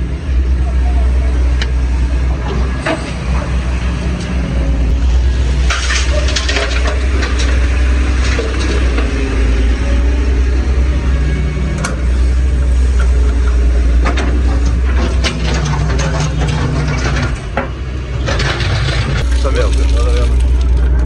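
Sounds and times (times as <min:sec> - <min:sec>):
excavator diesel engine rumbling: 0:00.0 - 0:21.0.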